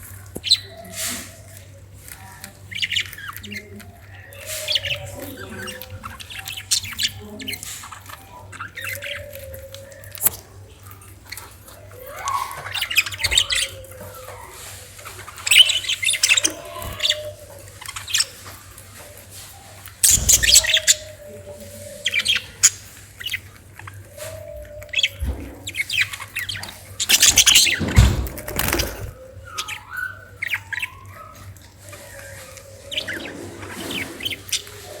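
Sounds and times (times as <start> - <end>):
parrot chirping and squawking: 11.3 - 18.5, 20.0 - 27.9, 28.6 - 35.0.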